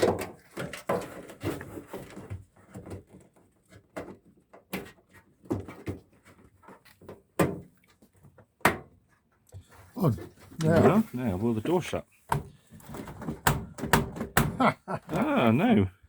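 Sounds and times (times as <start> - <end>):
washing machine door clicks and knocks: 13.4 - 14.6.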